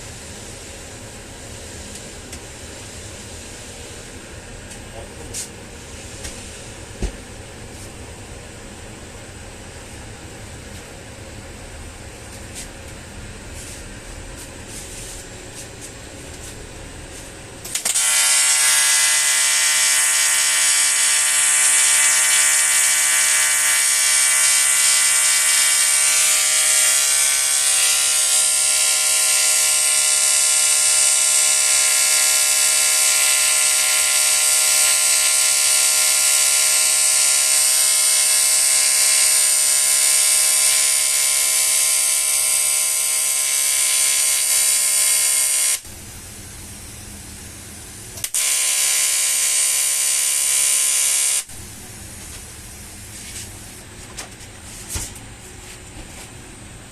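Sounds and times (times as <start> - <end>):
welding arc buzzing: 17.2 - 53.9.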